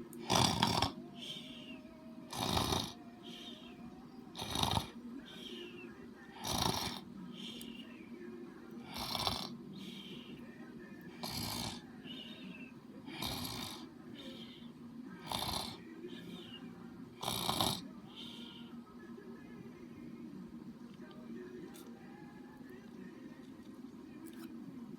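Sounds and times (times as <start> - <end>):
loud snoring: 0.2 - 1.5, 2.3 - 3.7, 4.3 - 5.5, 6.4 - 7.6, 8.8 - 9.6, 11.2 - 12.4, 13.1 - 13.9, 15.2 - 16.5, 17.2 - 18.4
breath hiss: 0.2 - 3.8, 4.4 - 5.8, 8.9 - 10.4, 11.2 - 16.6, 17.2 - 18.8.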